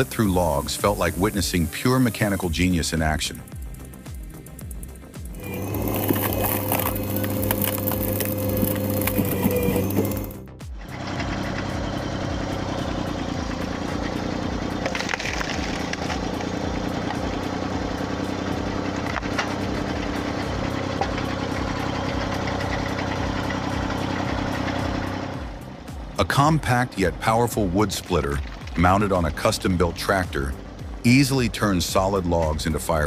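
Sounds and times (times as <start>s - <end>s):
log splitter engine running: 2.2s - 32.8s
wood cracking: 5.4s - 10.4s, 14.1s - 17.6s, 28.2s - 29.1s.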